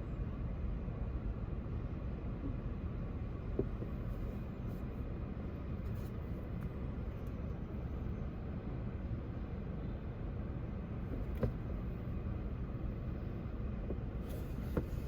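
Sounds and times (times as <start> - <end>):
low background rumble: 0.0 - 15.0.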